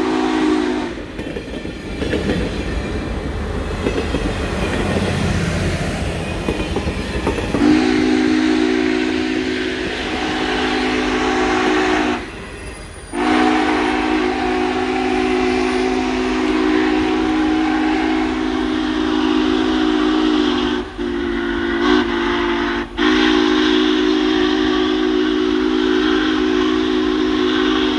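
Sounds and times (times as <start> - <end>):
steam whistle blasts: 0.0 - 1.1, 7.6 - 27.9
train running noise: 0.0 - 27.9.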